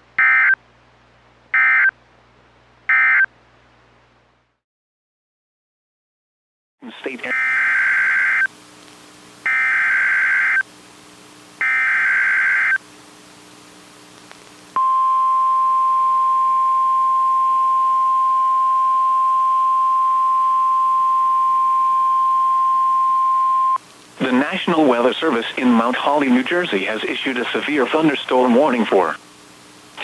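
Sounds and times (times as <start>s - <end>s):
steady high alarm tone: 14.8s - 23.8s.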